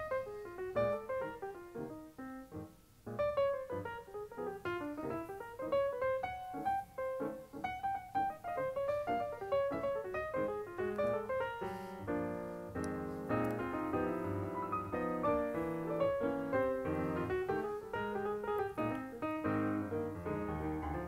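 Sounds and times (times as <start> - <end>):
lively piano music: 0.0 - 21.0.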